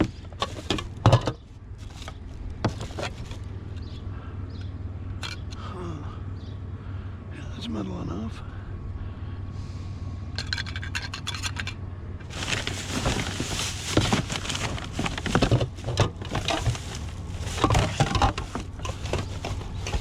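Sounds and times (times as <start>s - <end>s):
metal and plastic items clattering: 0.0s - 3.5s, 10.4s - 20.0s.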